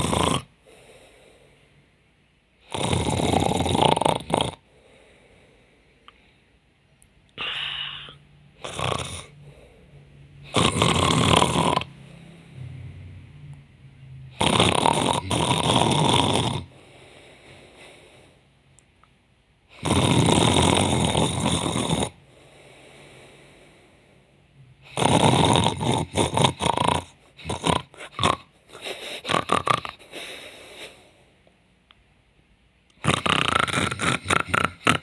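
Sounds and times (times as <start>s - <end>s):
woman fake-snoring: 0.0s - 1.2s, 2.6s - 4.7s, 7.4s - 9.6s, 10.4s - 12.8s, 14.3s - 17.0s, 19.7s - 23.2s, 24.8s - 31.2s, 33.0s - 35.0s
quiet breaths: 0.0s - 3.6s, 4.5s - 10.6s, 11.8s - 14.4s, 15.7s - 19.8s, 21.0s - 25.7s, 26.9s - 32.1s
short broken snorts: 33.0s - 35.0s.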